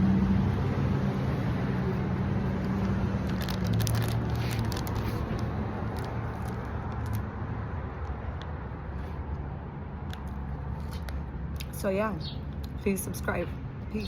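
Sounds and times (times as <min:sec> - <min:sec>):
crisp clicks and crunches: 0:02.6 - 0:09.4, 0:10.0 - 0:11.8.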